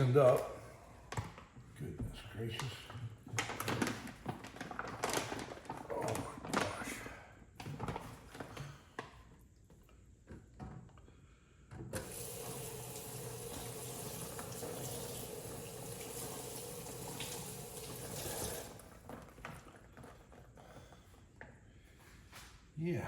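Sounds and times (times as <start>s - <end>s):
tap running into sink: 11.9s - 18.8s.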